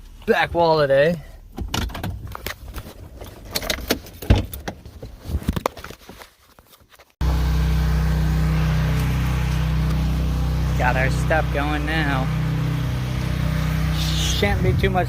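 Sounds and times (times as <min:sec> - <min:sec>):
engine running with low hum: 0:07.2 - 0:15.0.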